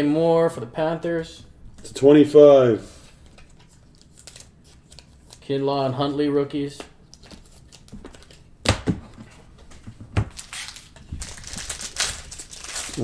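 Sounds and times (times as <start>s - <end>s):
cards rustling: 3.0s - 5.5s, 6.8s - 13.0s.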